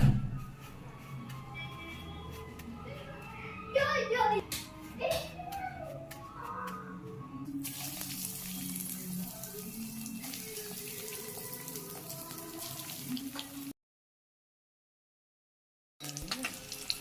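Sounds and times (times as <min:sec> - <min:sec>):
background music: 0:00.0 - 0:13.7, 0:16.0 - 0:17.0
deep-frying sizzle with crackles: 0:07.6 - 0:13.7, 0:16.0 - 0:17.0.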